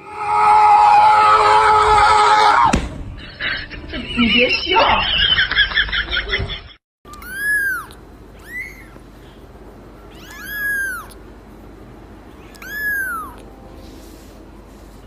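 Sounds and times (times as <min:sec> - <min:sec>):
cat meowing: 0:07.1 - 0:09.0, 0:10.1 - 0:11.2, 0:12.4 - 0:13.5.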